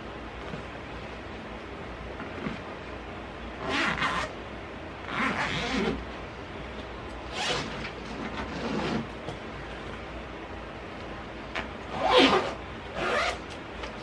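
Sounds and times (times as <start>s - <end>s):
zipper being pulled: 3.6s - 4.3s, 5.0s - 6.0s, 7.3s - 9.1s, 11.6s - 13.6s.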